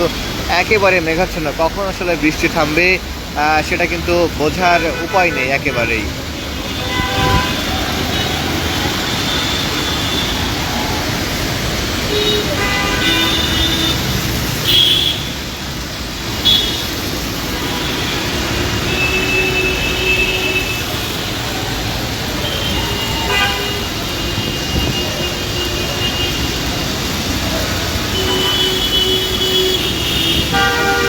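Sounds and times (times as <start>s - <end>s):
rain: 0.0s - 31.0s
street traffic: 0.0s - 31.0s
vehicle horns honking: 4.6s - 10.6s, 12.0s - 15.4s, 16.4s - 21.4s, 22.3s - 27.0s, 28.0s - 31.0s.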